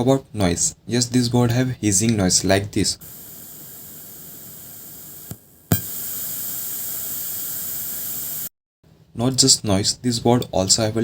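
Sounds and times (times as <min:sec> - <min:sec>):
speaker hiss: 0:03.0 - 0:08.5.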